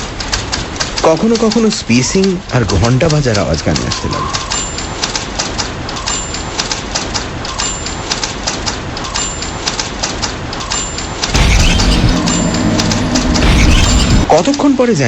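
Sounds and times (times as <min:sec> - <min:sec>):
steady rain: 0:00.0 - 0:06.0
typewriter keys clacking: 0:00.0 - 0:11.3.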